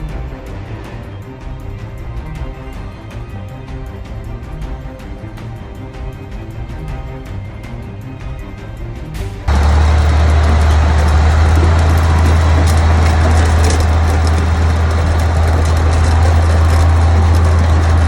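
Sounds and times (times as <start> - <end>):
bulldozer diesel engine drone: 9.5 - 18.0.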